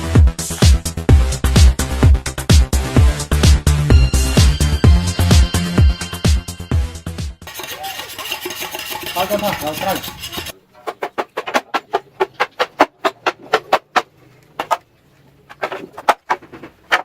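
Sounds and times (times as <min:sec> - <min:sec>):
music: 0:00.0 - 0:09.2.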